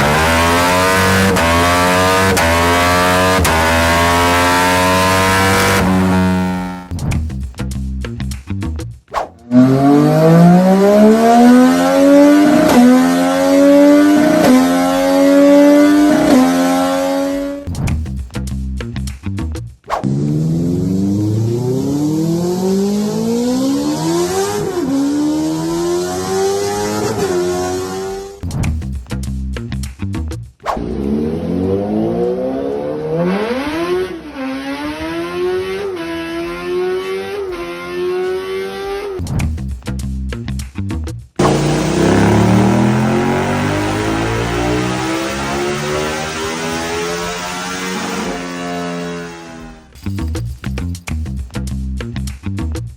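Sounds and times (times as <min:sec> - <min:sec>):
motorcycle engine high revs: 0:00.0 - 0:06.9, 0:09.4 - 0:17.7, 0:20.0 - 0:28.4, 0:30.8 - 0:39.2, 0:41.4 - 0:49.8
choppy pulsing sound: 0:41.4 - 0:46.1.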